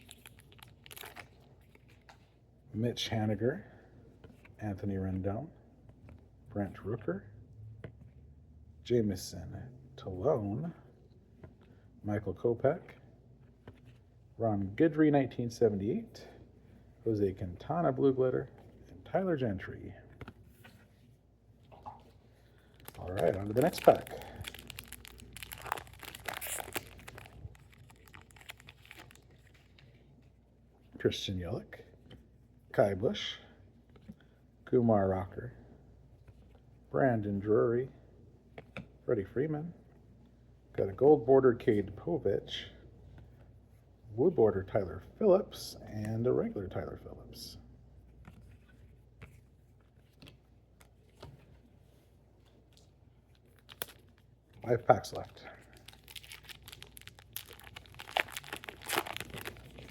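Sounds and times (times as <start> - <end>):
card pack wrapper crinkling: 0.0 - 2.0, 22.7 - 29.8, 53.4 - 54.3, 55.1 - 59.9.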